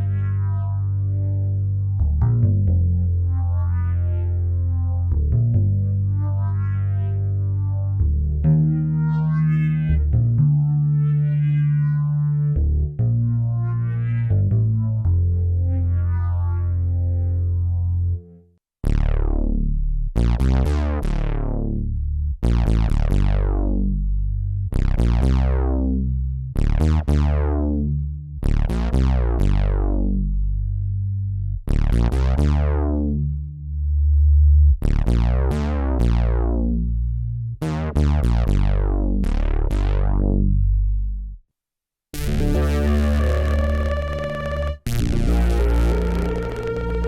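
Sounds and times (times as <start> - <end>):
synthesizer bass notes: 0.0 - 41.4, 42.2 - 47.0
bright sustained synth sound: 42.2 - 47.0.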